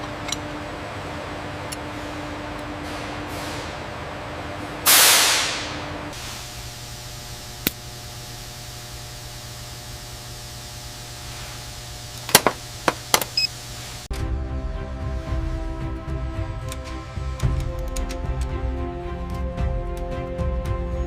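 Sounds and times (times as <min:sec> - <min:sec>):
low mechanical hum: 0:00.0 - 0:21.0
loud burst of hiss: 0:04.8 - 0:14.1
sharp clicks: 0:07.6 - 0:07.9.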